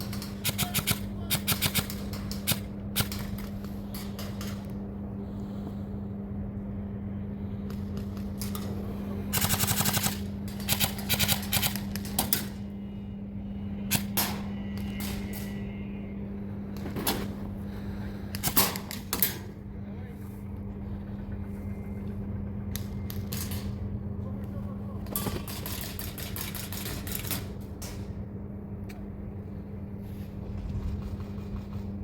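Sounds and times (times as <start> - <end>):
airsoft guns firing: 0.0 - 3.5, 9.3 - 12.6, 18.4 - 19.4
low hum: 0.0 - 32.0.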